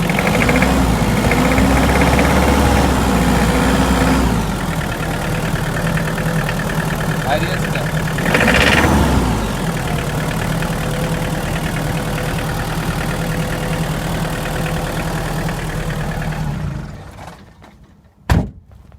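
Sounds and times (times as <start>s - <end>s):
diesel engine idling with knock: 0.0s - 18.9s.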